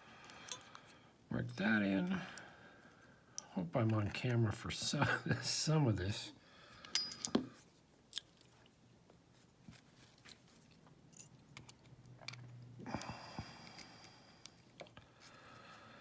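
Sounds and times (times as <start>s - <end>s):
small metal tools clicking and scraping: 0.2s - 0.9s, 6.8s - 8.5s, 11.1s - 12.5s.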